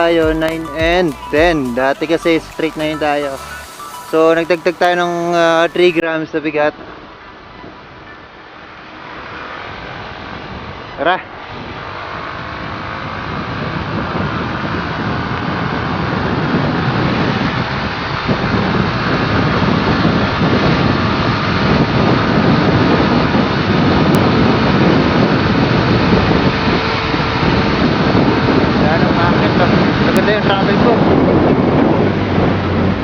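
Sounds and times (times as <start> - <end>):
wind rushing over microphone: 0.0 - 6.1, 6.8 - 33.0.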